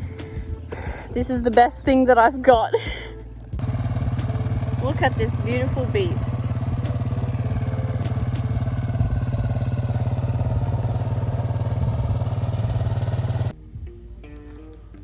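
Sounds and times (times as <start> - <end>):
background music with plucked bass: 0.0 - 15.0
dirt bike engine idling: 3.6 - 13.5.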